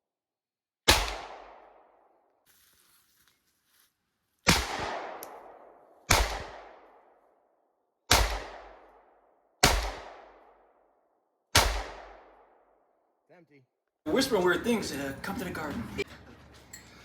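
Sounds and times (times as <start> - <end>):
gunshots with long echo: 0.8 - 2.3, 4.4 - 13.0.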